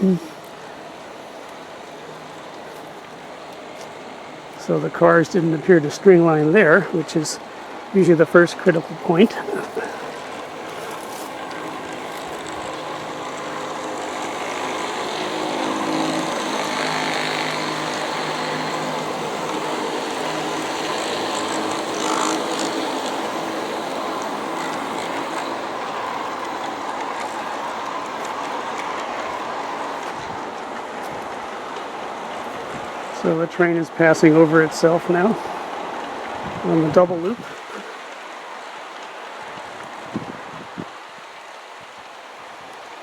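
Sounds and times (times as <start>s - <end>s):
low locomotive hum: 0.0s - 33.2s
model train rolling on track: 0.0s - 40.4s.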